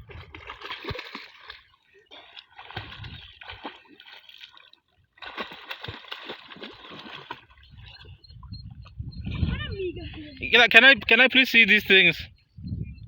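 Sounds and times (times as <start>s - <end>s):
water splashing from swimmers: 0.0s - 8.2s.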